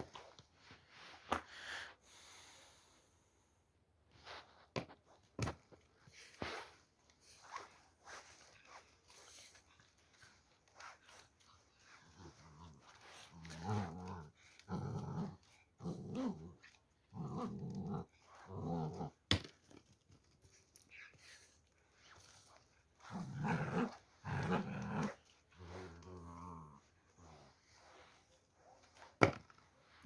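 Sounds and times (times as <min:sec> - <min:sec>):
puppy growling: 0:11.9 - 0:19.3, 0:23.0 - 0:27.6.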